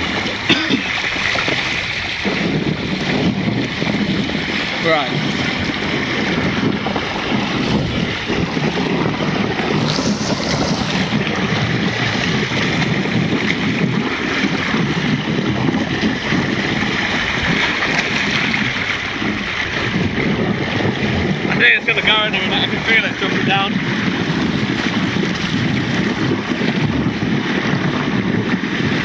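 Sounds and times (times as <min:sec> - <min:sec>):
whirlpool water churning: 0:00.0 - 0:29.0
wind buffeting microphone: 0:00.0 - 0:29.0.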